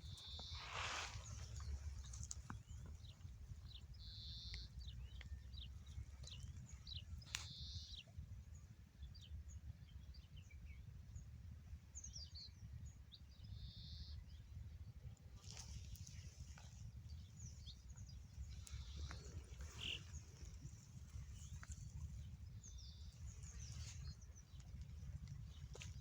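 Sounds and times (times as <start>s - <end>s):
small birds chirping: 0.0s - 10.5s, 15.3s - 26.0s
faint low rumble: 12.8s - 26.0s.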